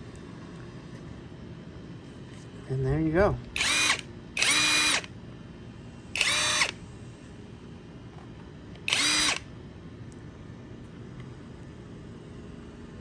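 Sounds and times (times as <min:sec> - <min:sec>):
impact wrench motor whirring: 0:03.6 - 0:05.1, 0:06.2 - 0:06.8, 0:08.9 - 0:09.5.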